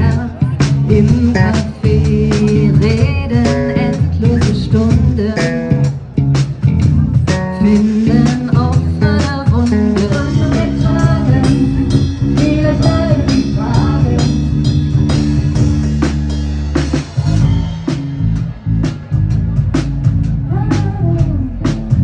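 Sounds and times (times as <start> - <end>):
person singing: 0.0 - 5.9, 7.2 - 14.7, 20.5 - 21.8
bass line: 0.0 - 22.0
drum kit beat: 0.0 - 22.0.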